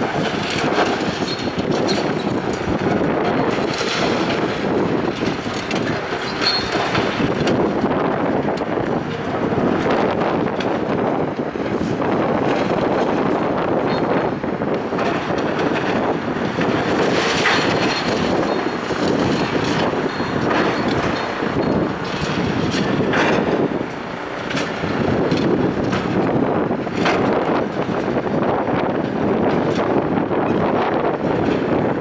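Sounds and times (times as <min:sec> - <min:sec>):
strong wind on microphone: 0:00.0 - 0:32.0
knocks and clatter: 0:01.0 - 0:07.8, 0:15.0 - 0:26.3.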